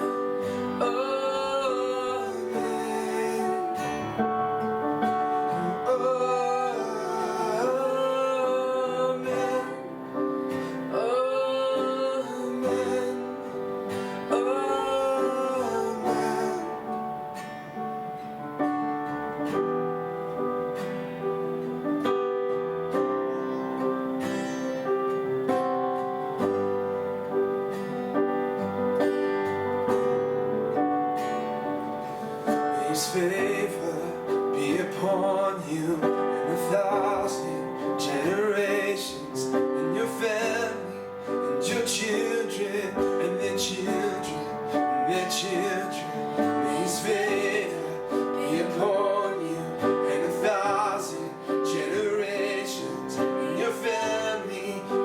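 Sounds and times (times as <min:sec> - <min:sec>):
person singing: 0:00.0 - 0:17.4, 0:32.4 - 0:55.0
acoustic guitar playing: 0:00.0 - 0:55.0.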